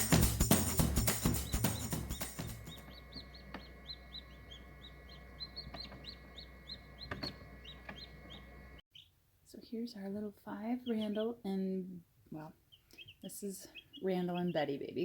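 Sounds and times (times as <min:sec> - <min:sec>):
percussive music: 0:00.0 - 0:02.8
chicks peeping: 0:00.4 - 0:09.1, 0:10.0 - 0:15.0.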